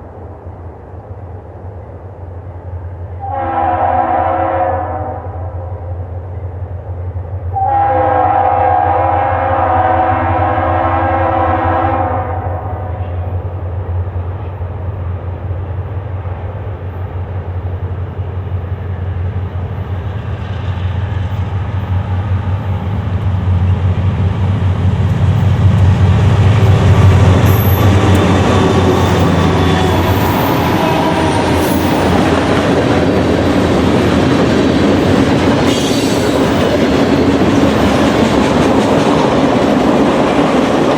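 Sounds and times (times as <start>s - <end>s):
train engines humming: 0.0s - 40.9s
locomotive air horn chord: 3.2s - 5.5s, 7.5s - 12.8s
wheels clattering on rails: 24.9s - 40.9s.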